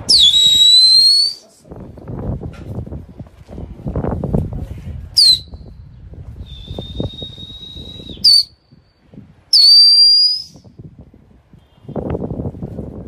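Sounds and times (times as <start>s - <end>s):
person whistling: 6.5s - 8.5s.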